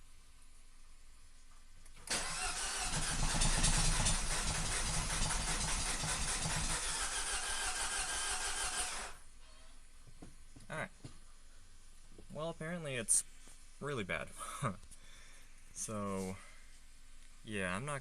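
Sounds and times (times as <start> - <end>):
engine cranking by starter: 2.0 - 9.2.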